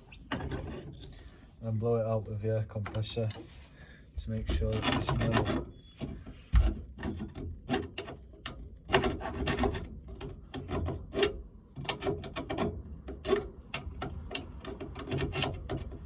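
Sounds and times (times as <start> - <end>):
hand file rasping on metal: 4.3 - 6.0, 6.8 - 16.0.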